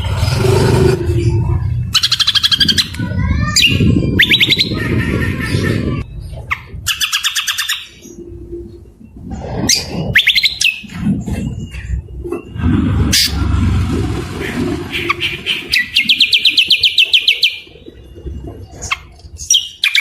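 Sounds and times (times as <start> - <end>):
low rumble: 0.0 - 6.9, 8.0 - 16.6
songbird singing: 3.6 - 10.9, 14.9 - 18.2.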